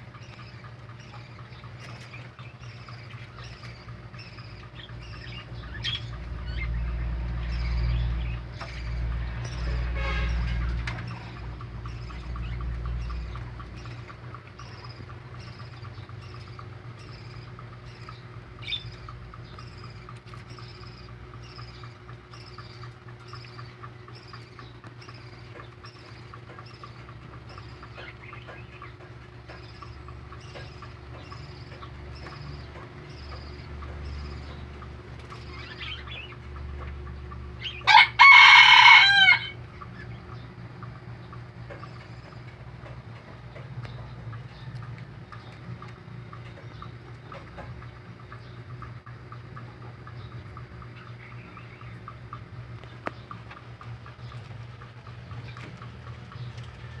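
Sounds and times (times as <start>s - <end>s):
rooster crowing: 37.8s - 39.6s, 56.7s - 57.0s.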